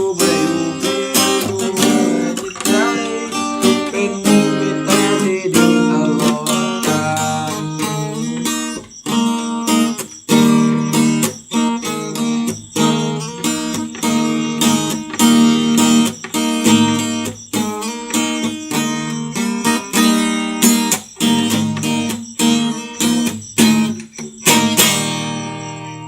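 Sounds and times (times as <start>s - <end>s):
acoustic guitar strumming: 0.0s - 26.0s.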